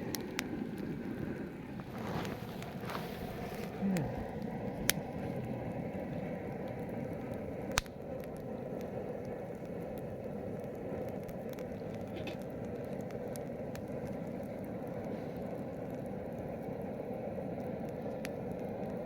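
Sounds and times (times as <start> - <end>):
campfire burning: 0.0 - 19.0
fire crackling: 0.0 - 19.0
loud sharp pops: 7.7 - 8.0.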